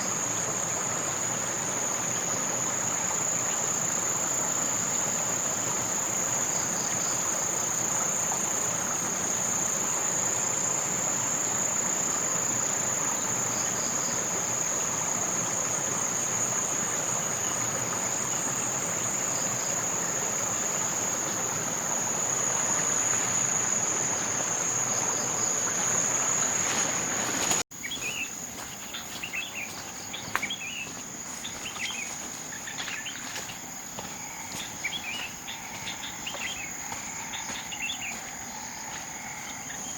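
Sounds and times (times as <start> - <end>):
high-pitched insect buzz: 25.9 - 39.9
bird chirps: 27.8 - 33.6, 34.3 - 39.9.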